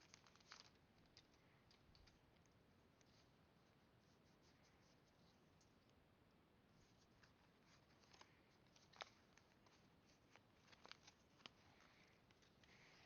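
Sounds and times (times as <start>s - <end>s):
card pack crinkling and clicking: 0.0s - 2.2s, 7.7s - 12.8s.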